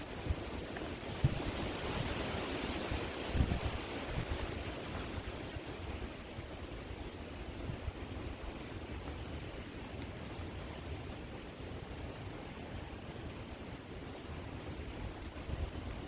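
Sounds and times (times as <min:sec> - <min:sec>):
wind buffeting microphone: 0:00.0 - 0:09.6, 0:14.4 - 0:16.0
river water flowing: 0:00.0 - 0:16.0.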